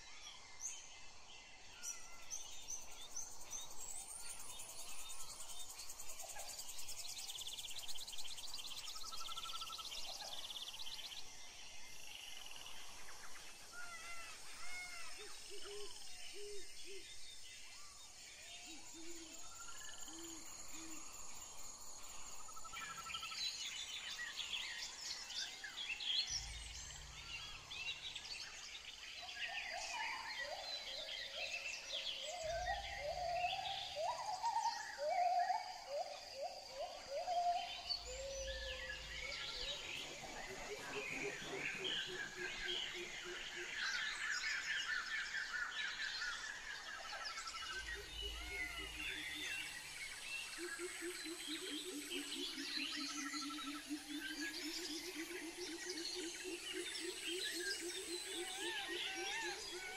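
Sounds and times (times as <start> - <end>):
birds chirping: 36.5 - 52.8.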